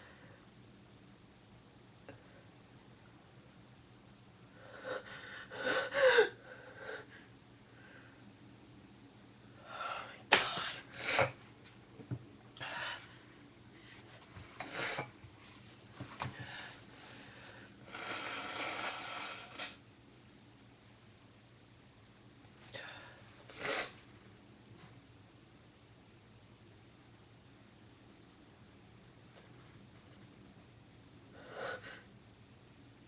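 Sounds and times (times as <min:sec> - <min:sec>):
nose blowing: 0:17.8 - 0:19.8, 0:23.5 - 0:24.0.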